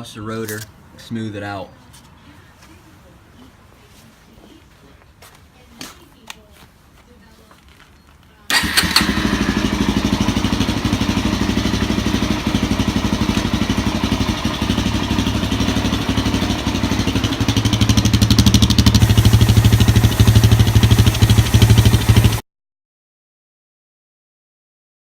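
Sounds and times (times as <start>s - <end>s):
quad engine idling: 8.5s - 22.4s.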